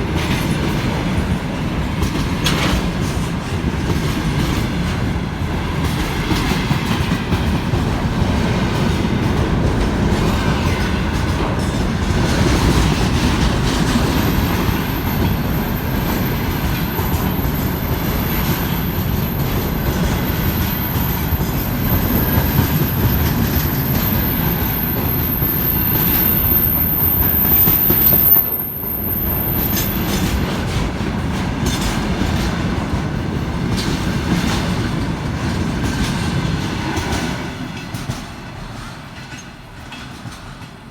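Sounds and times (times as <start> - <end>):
train wheels rumbling on rails: 0.0 - 40.9
high-pitched wheel squeal: 20.6 - 30.1.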